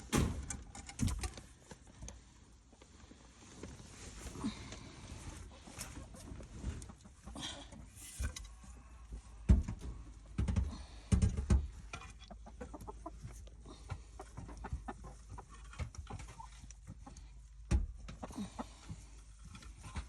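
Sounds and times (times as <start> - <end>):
heavy thumps: 0.0 - 1.2
knocks and scrapes: 7.9 - 12.3
hens clucking: 11.9 - 17.3, 18.0 - 19.1.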